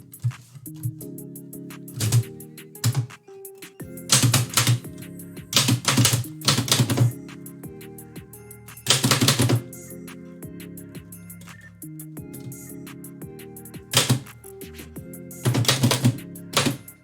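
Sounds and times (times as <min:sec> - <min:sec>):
background music: 0:00.0 - 0:17.0
typewriter keystroke clacks: 0:01.9 - 0:03.2, 0:04.1 - 0:04.9, 0:05.5 - 0:07.2, 0:08.9 - 0:09.6, 0:13.9 - 0:14.3, 0:15.4 - 0:16.9.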